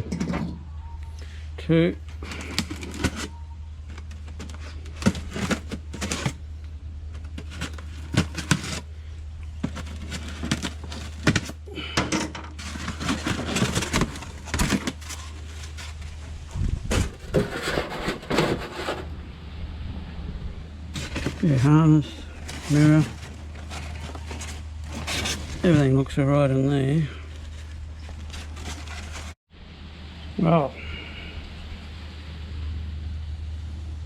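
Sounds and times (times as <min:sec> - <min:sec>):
steady low hum: 0:00.0 - 0:34.0
cardboard and plastic rustling: 0:02.0 - 0:19.1, 0:20.9 - 0:29.4.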